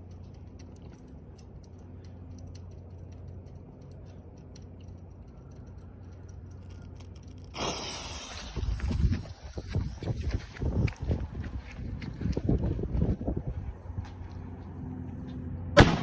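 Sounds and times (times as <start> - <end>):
low hum: 0.0 - 16.0
firework fuse crackling: 7.2 - 10.5
firecracker explosion: 7.5 - 10.0.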